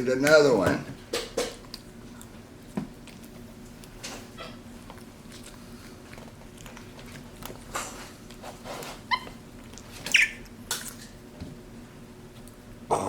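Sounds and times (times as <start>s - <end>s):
monkey squeaky calls: 9.1s - 9.3s, 10.0s - 10.4s.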